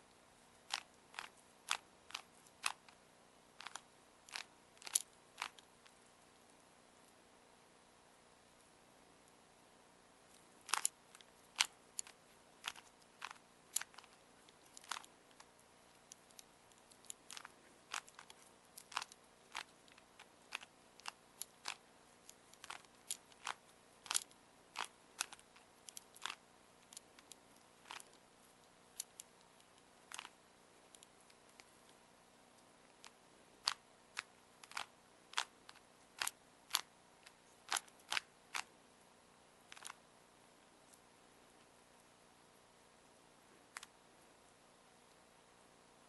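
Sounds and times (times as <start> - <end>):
puzzle cube plastic clicks: 0.6 - 3.0, 3.6 - 5.7, 10.6 - 28.2, 28.9 - 32.0, 32.9 - 38.7, 39.7 - 40.0.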